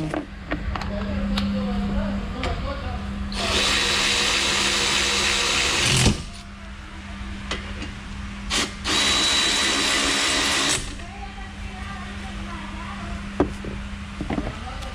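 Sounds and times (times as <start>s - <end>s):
power tool running: 3.3s - 6.4s, 8.5s - 11.0s.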